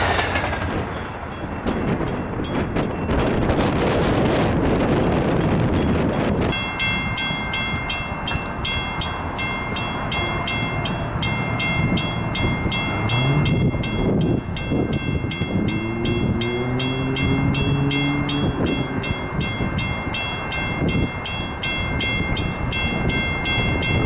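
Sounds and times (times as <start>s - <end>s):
crossing bell ringing: 0.0s - 24.0s
low train rumble: 0.0s - 24.0s.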